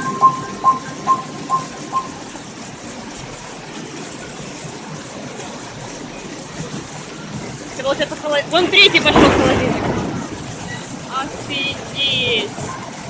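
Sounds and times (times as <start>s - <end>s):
repeating ringing tone: 0.0s - 2.5s
rushing floodwater: 0.0s - 13.0s.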